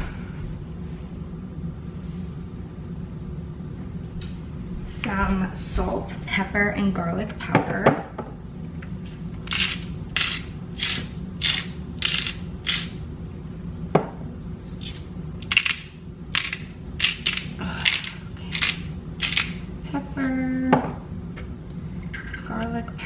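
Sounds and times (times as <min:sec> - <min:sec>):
pepper grinder grinding: 0:09.0 - 0:13.8, 0:14.6 - 0:20.4.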